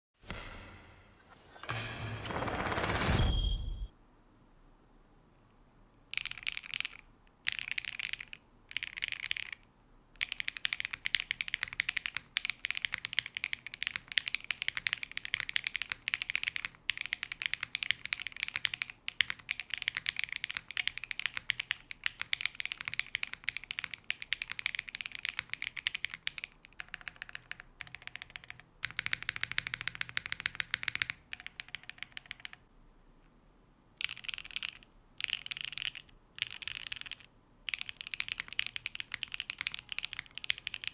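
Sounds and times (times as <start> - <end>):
mechanical keyboard key clacks: 10.2 - 32.6, 34.0 - 40.9.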